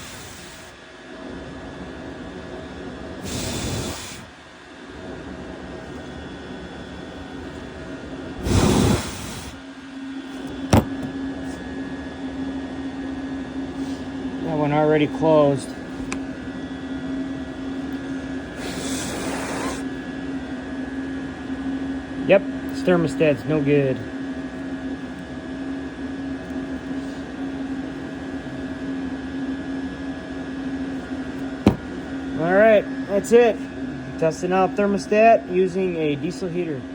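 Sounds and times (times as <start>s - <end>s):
blower air rush: 0.0s - 0.8s, 3.2s - 4.4s, 8.3s - 11.2s, 18.4s - 20.0s
heater humming: 0.0s - 36.9s
sharp knock: 31.6s - 31.9s.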